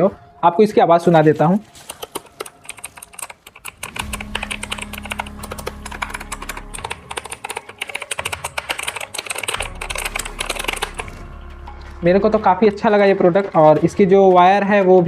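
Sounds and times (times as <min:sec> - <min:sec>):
mechanical keyboard clicking: 0:01.8 - 0:11.2.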